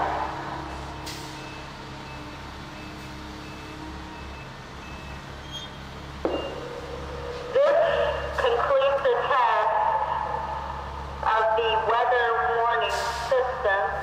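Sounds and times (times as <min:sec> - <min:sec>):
faint high beeps: 0:06.3 - 0:06.8.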